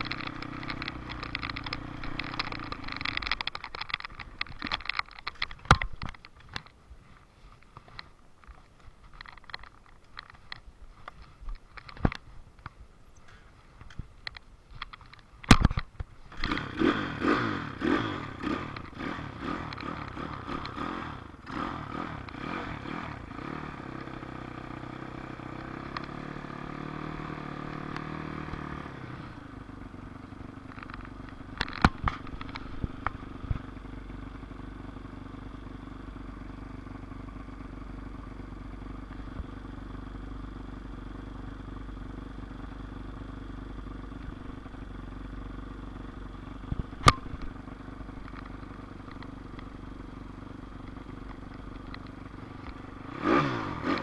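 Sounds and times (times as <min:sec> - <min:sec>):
clicks: 0:00.0 - 0:06.8, 0:18.4 - 0:20.8, 0:30.6 - 0:33.8, 0:46.7 - 0:54.0
dirt bike engine revving: 0:16.3 - 0:29.4, 0:52.3 - 0:54.0.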